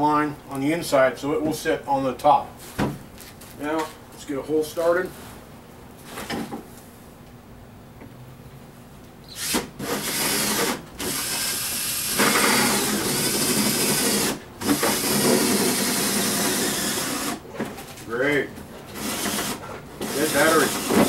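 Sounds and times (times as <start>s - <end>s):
cordless drill boring into plastic: 9.3s - 17.4s, 18.9s - 21.0s.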